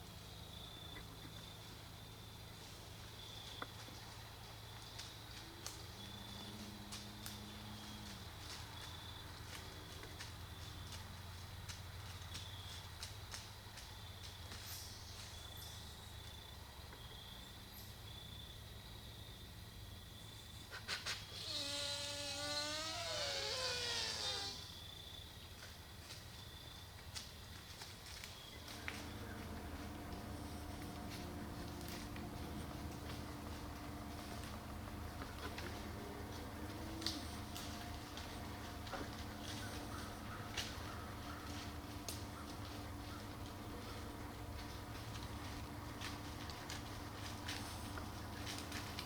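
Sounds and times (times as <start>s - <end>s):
faint clicks and crackles: 27.1s - 49.0s
low hum: 28.6s - 49.0s.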